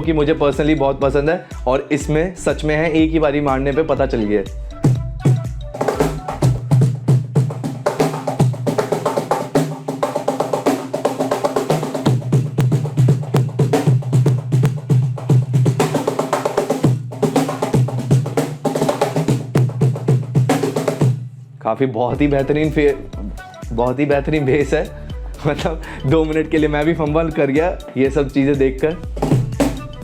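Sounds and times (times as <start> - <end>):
cajon played by hand: 4.8 - 21.3, 29.0 - 29.9.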